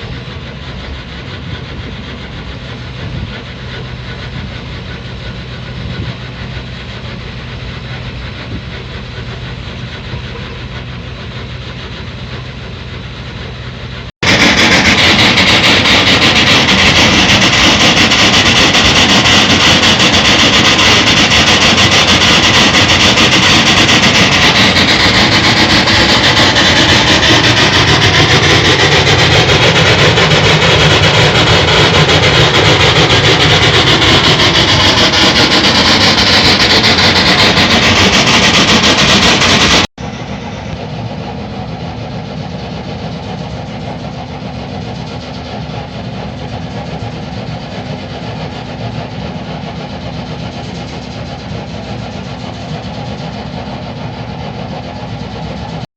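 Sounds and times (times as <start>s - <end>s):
quieter steady rush: 14.2s - 44.7s.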